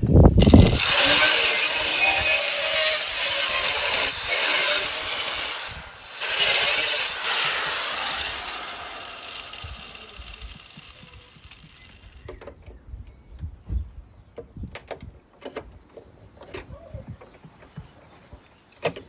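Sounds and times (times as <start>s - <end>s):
angle grinder on steel: 0.4s - 12.3s.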